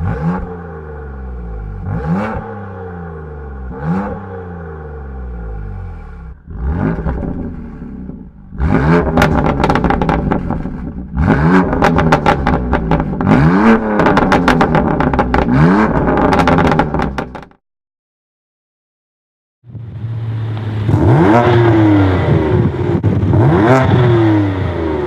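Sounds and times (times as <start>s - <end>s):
car engine revving: 0.0s - 17.5s, 19.7s - 25.0s
exhaust crackles: 3.6s - 17.5s.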